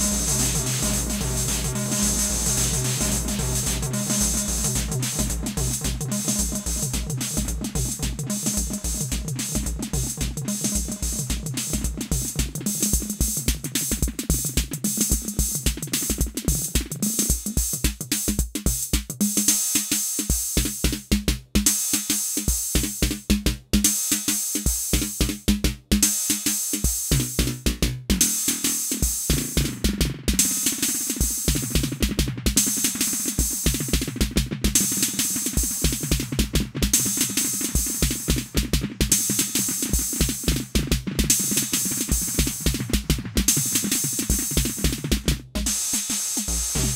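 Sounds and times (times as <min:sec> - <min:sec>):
buzzing stuttering effected beat: 0:00.0 - 0:14.6, 0:33.4 - 0:46.9
drum machine beat: 0:00.0 - 0:46.9.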